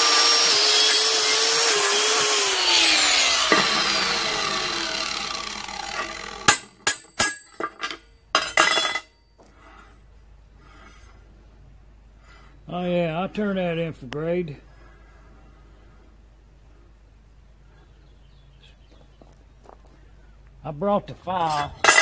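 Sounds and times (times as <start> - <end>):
power tool motor whining: 0.0 - 6.8.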